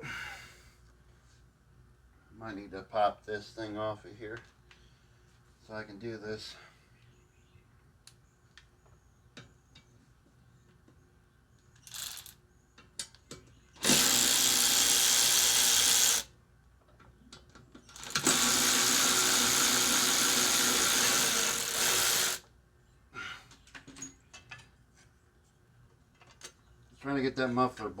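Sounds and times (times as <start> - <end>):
power drill running: 13.8 - 16.3, 17.9 - 22.4.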